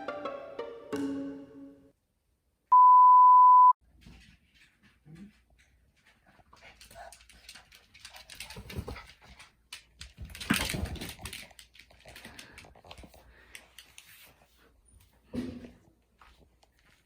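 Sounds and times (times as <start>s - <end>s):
dogs scuffling: 3.9s - 15.3s.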